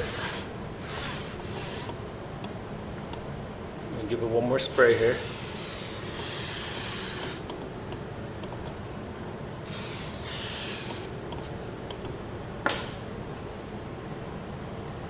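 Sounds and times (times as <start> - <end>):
aerosol can spraying: 9.7 - 11.0.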